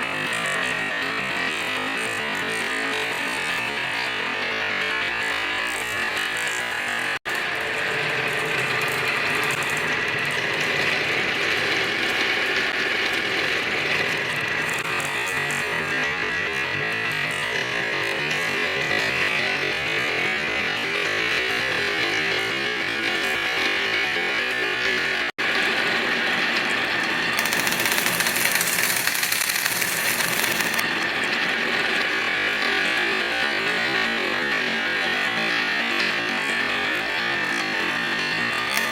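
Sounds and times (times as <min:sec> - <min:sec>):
toy wheels rattling on wooden track: 0:25.6 - 0:30.9.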